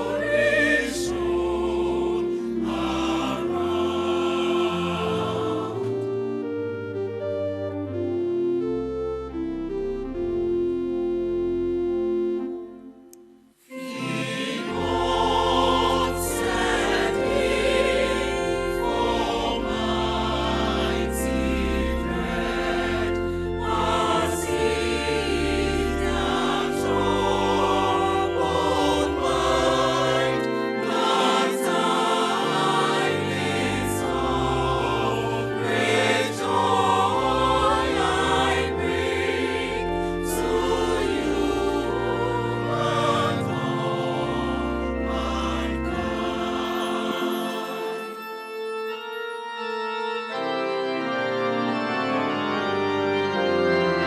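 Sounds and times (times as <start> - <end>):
choir singing over instrumental backing: 0.0 - 6.6, 13.7 - 48.4.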